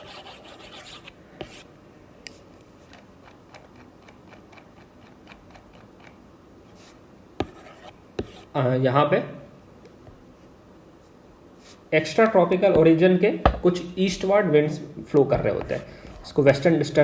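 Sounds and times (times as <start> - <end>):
pen scratching strokes: 0.0 - 1.7, 2.8 - 8.5.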